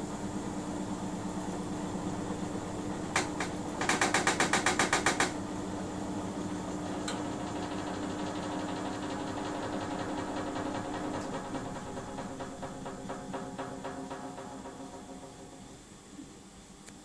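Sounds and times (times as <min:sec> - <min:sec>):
washing machine humming: 0:00.0 - 0:17.0
washing machine rattling clicks: 0:03.1 - 0:05.4, 0:07.0 - 0:15.8.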